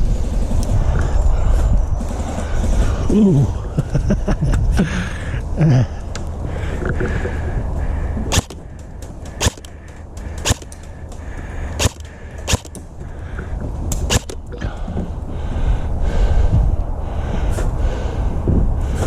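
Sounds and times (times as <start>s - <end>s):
airsoft gun shots: 8.3s - 8.7s, 9.4s - 9.8s, 10.4s - 10.7s, 11.8s - 12.8s, 14.0s - 14.4s.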